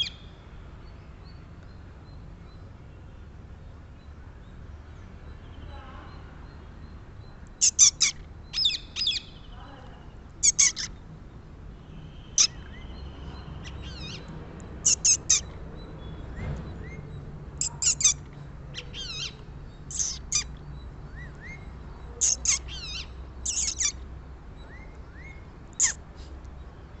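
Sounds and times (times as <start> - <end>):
wavering bird calls: 0.0 - 0.3, 7.5 - 11.0, 12.0 - 26.3
parakeets screeching: 7.6 - 9.4, 10.4 - 10.9, 12.2 - 15.5, 17.6 - 20.6, 21.4 - 24.0, 25.8 - 26.0.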